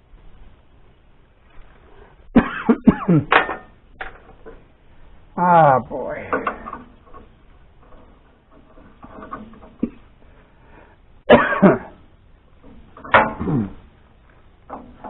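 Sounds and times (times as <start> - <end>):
man clearing his throat: 2.4 - 3.3, 11.3 - 12.0, 13.3 - 13.8
man coughing: 2.4 - 3.3, 11.3 - 12.0, 13.4 - 13.8.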